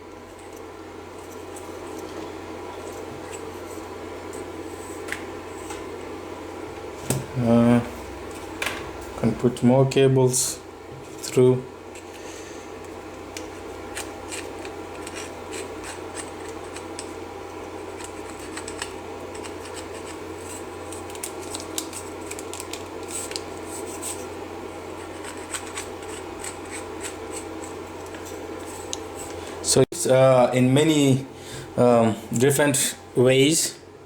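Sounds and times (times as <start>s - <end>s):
steady low hum: 0.0s - 34.0s
wire clicking and scratching on plastic: 13.4s - 17.1s, 17.9s - 24.2s.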